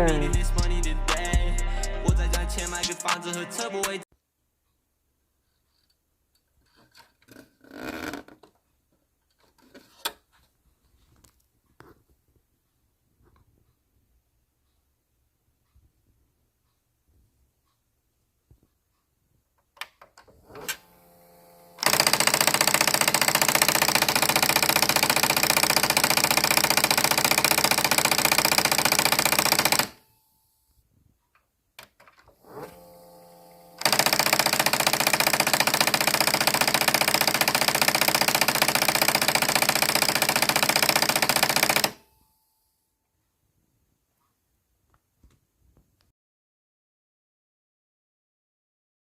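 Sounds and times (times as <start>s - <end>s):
vcr rapid drilling rattle: 20.6s - 30.0s, 32.4s - 42.0s
vcr motor whir: 32.4s - 36.8s.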